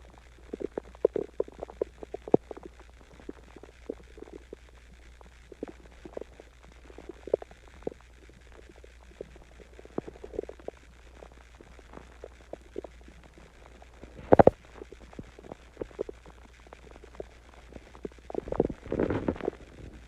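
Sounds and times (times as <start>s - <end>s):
stomach growling: 0.0s - 20.0s.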